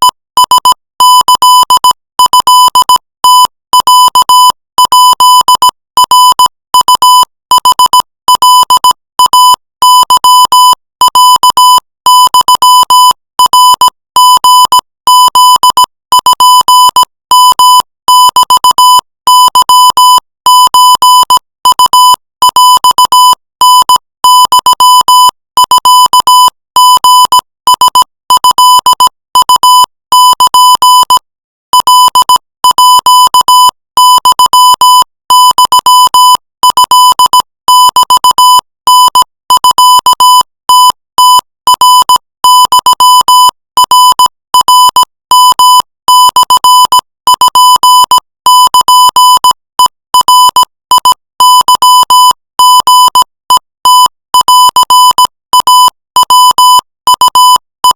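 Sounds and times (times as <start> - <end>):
morse code beeps: 0.0 - 31.1, 31.8 - 38.4.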